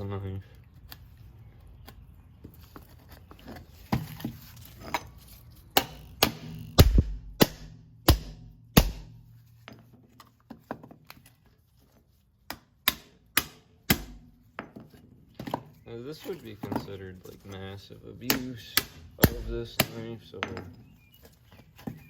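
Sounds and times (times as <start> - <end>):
knife being struck with sharp knocks: 5.8 - 9.3.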